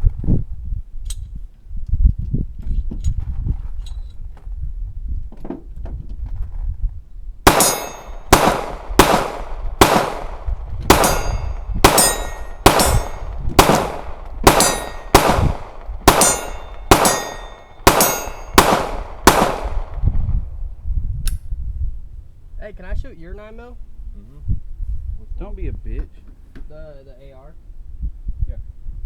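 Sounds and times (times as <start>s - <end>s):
gunshots with ringing tail: 7.4s - 20.3s.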